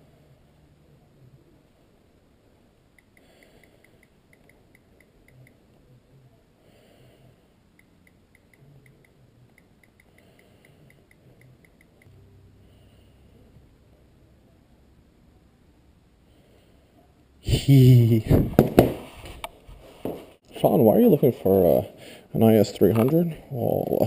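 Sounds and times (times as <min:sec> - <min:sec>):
light regular ticking: 0:02.9 - 0:05.6, 0:07.7 - 0:12.2.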